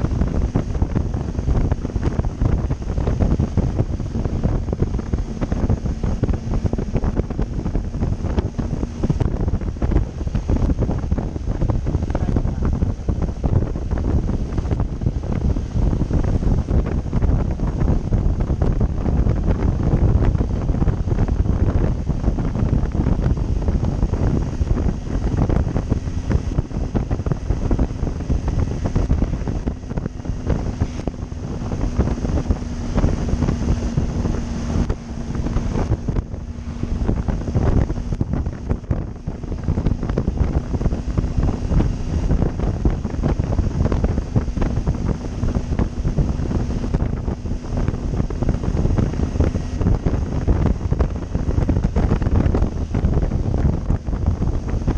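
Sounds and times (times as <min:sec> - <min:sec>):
faint motorcycle engine tone: 0:00.0 - 0:54.0
wind buffeting microphone: 0:00.0 - 0:54.9.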